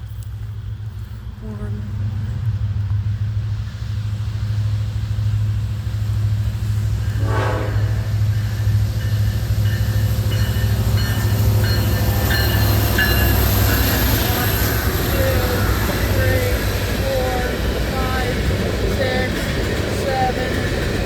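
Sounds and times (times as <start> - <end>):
locomotive low rumble: 0.0 - 21.0
train horn blast: 7.0 - 8.6.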